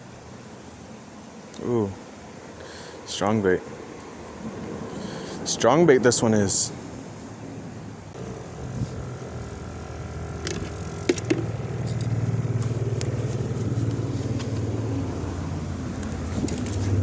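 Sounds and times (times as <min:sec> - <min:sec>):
vehicle engine drone: 0:04.1 - 0:17.0.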